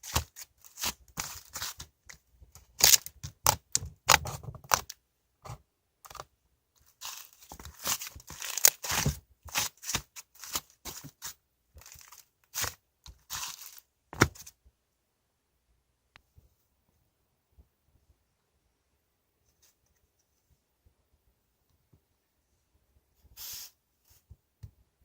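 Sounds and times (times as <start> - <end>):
crinkling and tearing handling: 0.0 - 5.0, 6.9 - 14.5.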